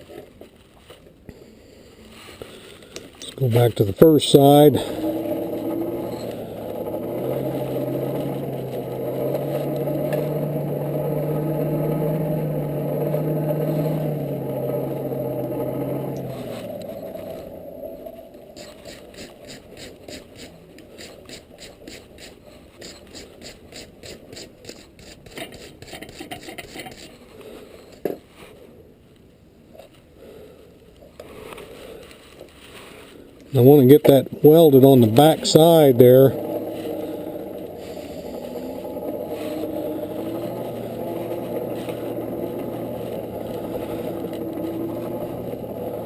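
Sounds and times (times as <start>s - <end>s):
forge humming: 3.0s - 18.8s, 33.5s - 46.0s
scraping strokes on steel: 18.6s - 27.2s.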